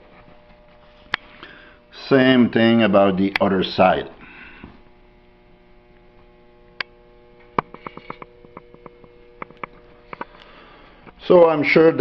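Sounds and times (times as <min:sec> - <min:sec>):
electrical mains hum: 0:00.0 - 0:12.0.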